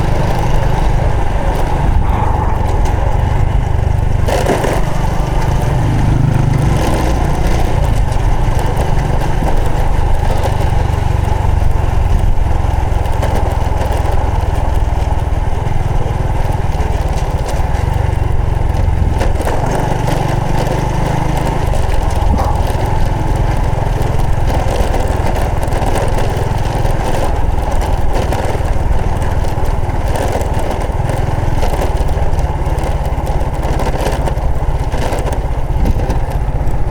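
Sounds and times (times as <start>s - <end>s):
motorcycle engine running: 0.0s - 36.9s
wind and road noise: 0.0s - 36.9s.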